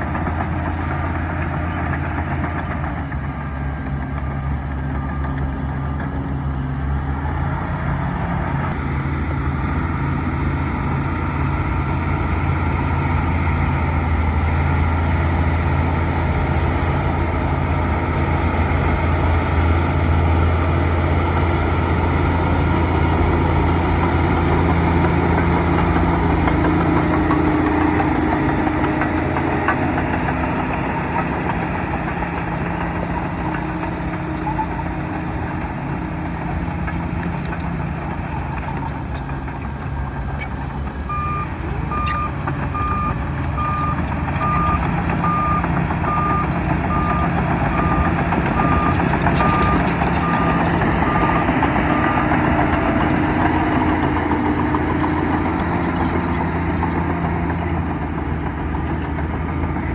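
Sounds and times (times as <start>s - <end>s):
bulldozer diesel engine running: 0.0s - 59.9s
reversing alarm beeping: 41.1s - 52.8s.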